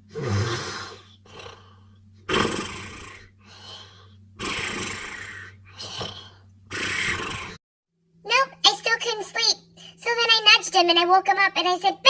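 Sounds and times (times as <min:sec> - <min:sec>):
person snoring loudly: 0:00.0 - 0:07.6
soft breathing: 0:03.2 - 0:04.2, 0:05.0 - 0:07.6.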